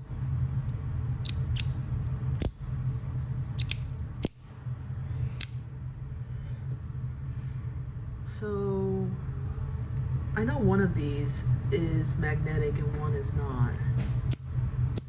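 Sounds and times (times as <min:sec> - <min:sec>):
low steady hum: 0:00.0 - 0:15.0
metal fidget slider clicking: 0:01.2 - 0:01.7, 0:02.4 - 0:02.6, 0:03.6 - 0:04.4, 0:05.4 - 0:05.6.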